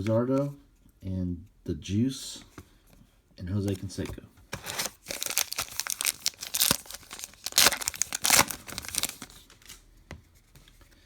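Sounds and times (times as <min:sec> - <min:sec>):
wrapper tearing and crinkling: 0:04.6 - 0:09.8.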